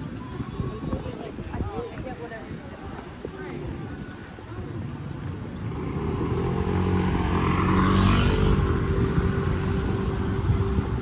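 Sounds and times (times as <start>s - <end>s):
vehicle engine passing by: 5.6s - 11.0s.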